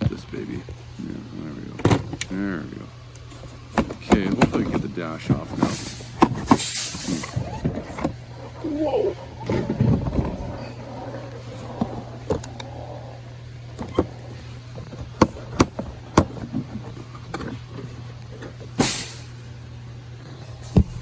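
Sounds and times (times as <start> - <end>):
steady low hum: 0.0 - 21.0
plastic scraping: 3.2 - 19.2.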